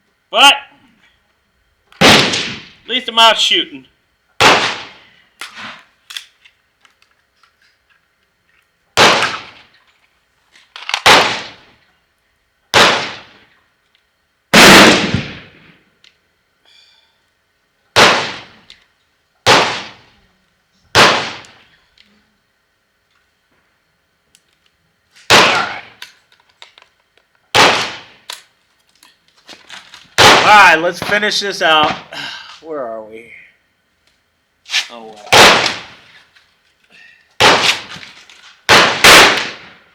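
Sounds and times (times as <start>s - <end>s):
rifle shots: 2.0s - 2.8s, 4.4s - 5.0s, 9.0s - 9.7s, 10.9s - 11.7s, 12.7s - 13.4s, 14.5s - 15.7s, 18.0s - 18.6s, 19.4s - 20.1s, 20.9s - 21.6s, 25.3s - 26.0s, 27.5s - 28.3s, 30.2s - 32.1s, 35.3s - 36.0s, 37.4s - 38.1s, 38.7s - 39.8s.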